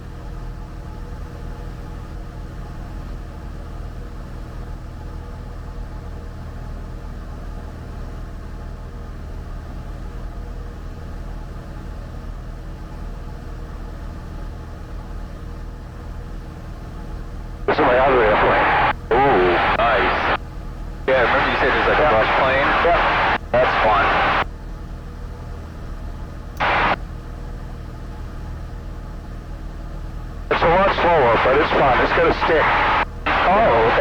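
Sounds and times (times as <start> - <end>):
airplane engine droning: 17.7 - 20.4, 21.1 - 24.5, 26.6 - 27.0, 30.5 - 34.0.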